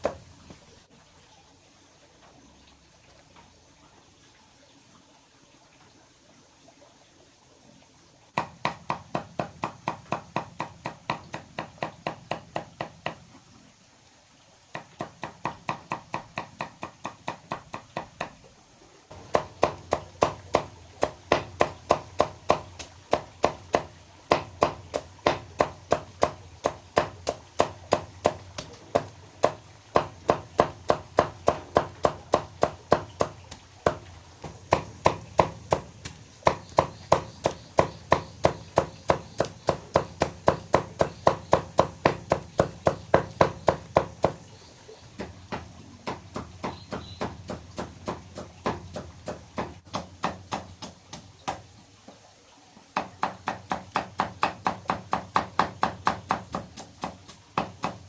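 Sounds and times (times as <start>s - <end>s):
rapid chopping strokes: 8.4s - 13.2s, 19.1s - 44.5s, 45.2s - 51.6s, 53.0s - 58.0s.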